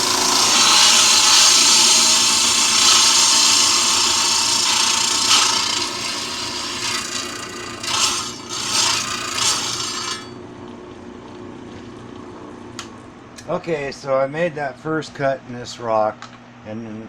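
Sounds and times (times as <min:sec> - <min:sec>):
saw blade grinding through stone: 0:00.0 - 0:10.4.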